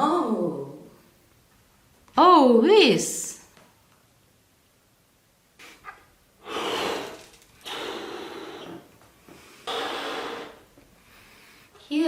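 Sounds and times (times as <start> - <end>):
long breathy sounds: 5.6 - 11.8.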